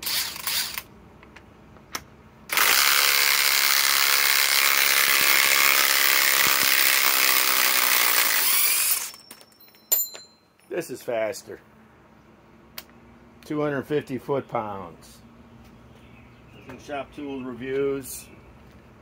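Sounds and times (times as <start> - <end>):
impact wrench hammering: 2.5 - 10.3.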